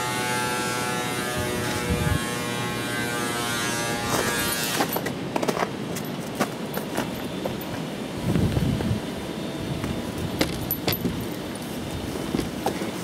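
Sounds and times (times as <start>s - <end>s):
electric wood planer whining: 0.0s - 4.7s.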